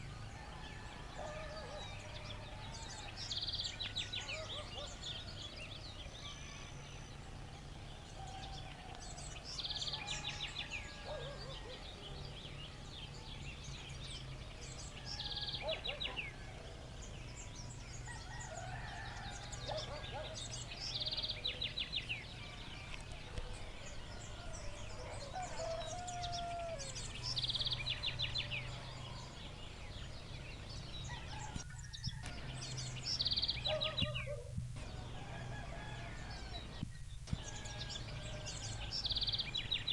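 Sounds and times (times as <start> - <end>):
bird calls: 0.0 - 39.9
distant rooster crowing: 0.0 - 39.9
steady low hum: 15.9 - 39.9.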